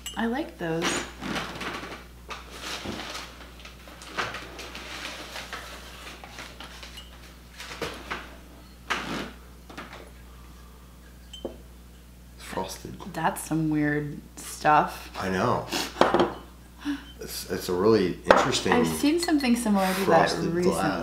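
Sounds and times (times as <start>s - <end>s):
pottery and glass clinking: 6.8s - 7.2s, 10.5s - 12.1s, 16.0s - 17.2s, 18.3s - 21.0s.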